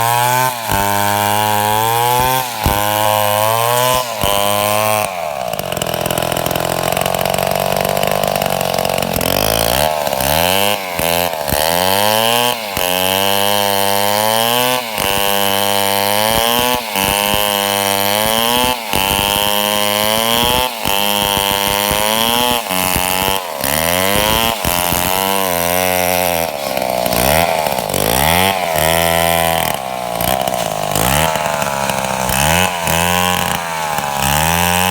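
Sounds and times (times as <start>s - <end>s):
chainsaw revving: 0.0s - 34.9s.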